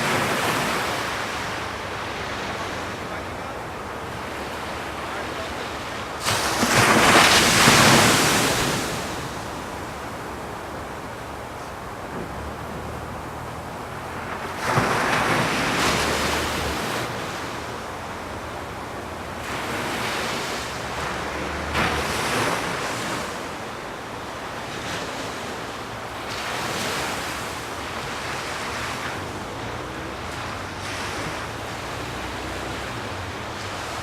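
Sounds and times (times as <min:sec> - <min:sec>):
waves breaking: 0:00.0 - 0:34.0
water splash: 0:06.2 - 0:09.7.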